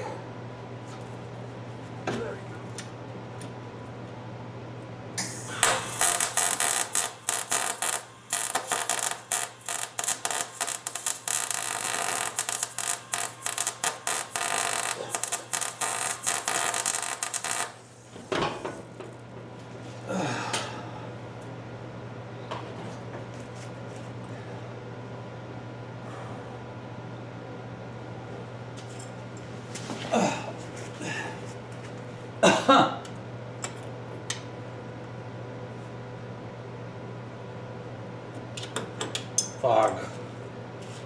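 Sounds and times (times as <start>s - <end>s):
low electrical hum: 0.0s - 41.0s
welder arc crackling: 5.2s - 18.0s.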